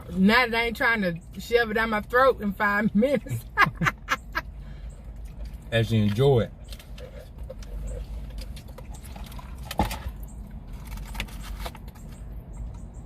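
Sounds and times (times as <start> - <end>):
low steady rumble: 0.0 - 13.0
chewing and mouth clicks: 4.8 - 13.0.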